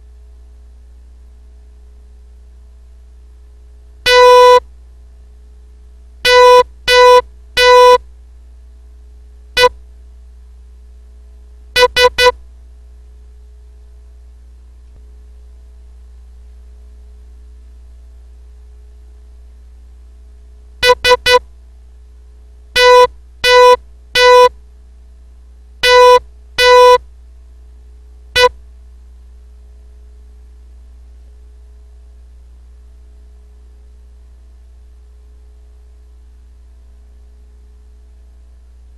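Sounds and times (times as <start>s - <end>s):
faint steady hum: 0.0s - 38.9s
morse code beeps: 4.1s - 4.6s, 6.3s - 8.0s, 11.8s - 12.4s, 20.8s - 21.4s, 22.8s - 24.5s, 25.8s - 27.0s.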